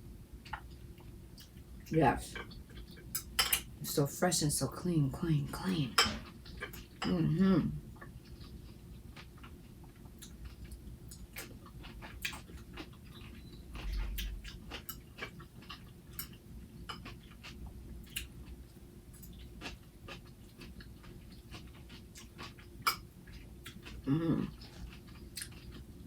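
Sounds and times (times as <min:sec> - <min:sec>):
chewing crunchy salad: 0:05.6 - 0:07.2, 0:07.9 - 0:26.0.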